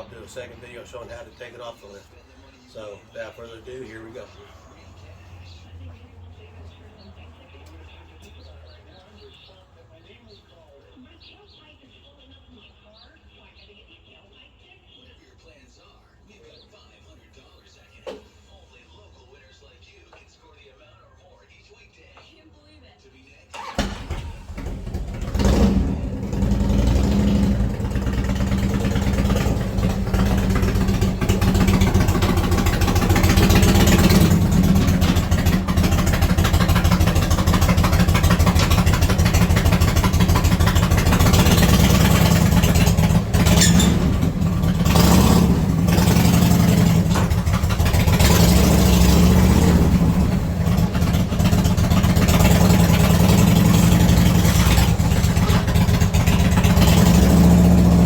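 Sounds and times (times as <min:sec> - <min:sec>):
motorcycle engine idling and revving: 0:23.6 - 0:58.0.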